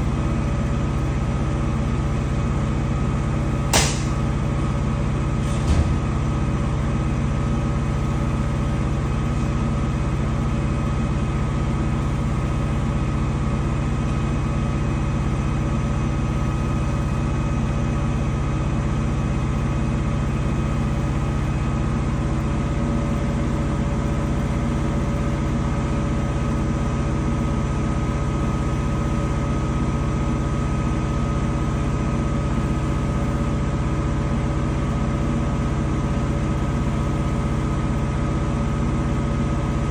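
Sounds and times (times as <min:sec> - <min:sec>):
washing machine spinning: 0:00.0 - 0:39.9
brief knock: 0:03.7 - 0:04.2.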